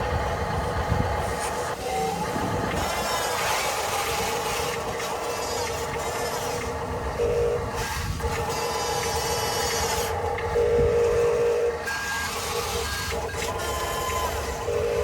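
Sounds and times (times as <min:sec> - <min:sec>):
gritty mechanical noise: 0:00.0 - 0:15.0
electronic steady tone: 0:07.2 - 0:15.0.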